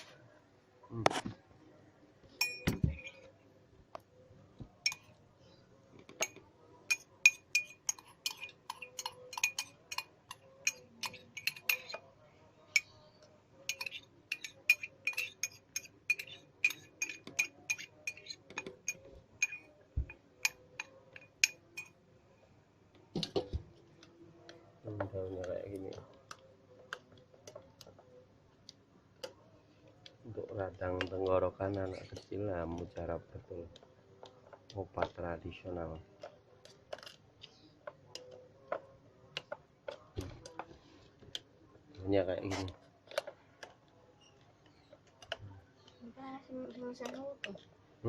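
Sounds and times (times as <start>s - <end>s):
spoon clinking against glass: 2.4s - 3.2s, 4.8s - 5.2s, 6.2s - 12.1s, 13.7s - 22.0s.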